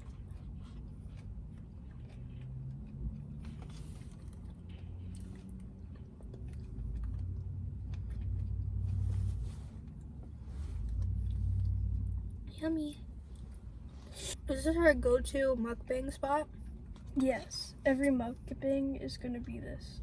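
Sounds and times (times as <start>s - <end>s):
person chewing with wet clicks: 0.0s - 12.5s, 16.5s - 18.6s
low rumble: 2.7s - 16.0s.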